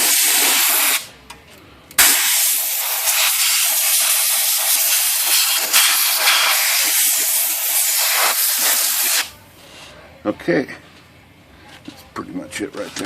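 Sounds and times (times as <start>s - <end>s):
compressed air blowgun hissing: 2.0s - 9.3s.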